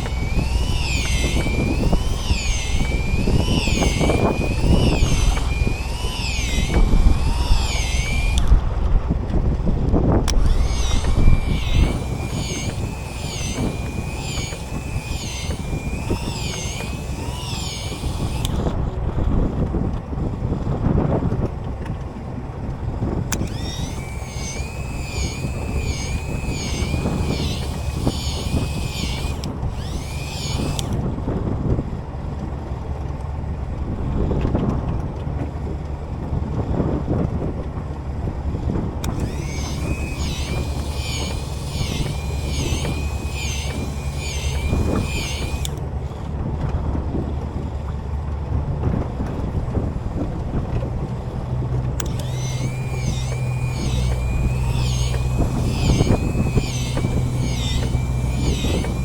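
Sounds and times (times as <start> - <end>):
wavering high-pitched whine: 0.0 - 19.0, 23.3 - 31.0, 39.0 - 45.8, 52.0 - 59.0
wind: 0.0 - 59.0.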